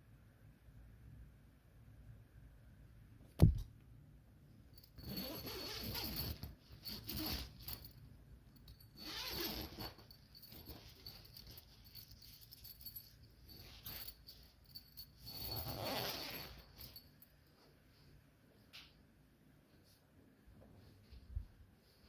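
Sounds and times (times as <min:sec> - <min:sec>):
sharp thump: 0:03.4 - 0:03.7
light metallic jingle: 0:04.6 - 0:18.1
rustling and handling noise: 0:04.6 - 0:19.0.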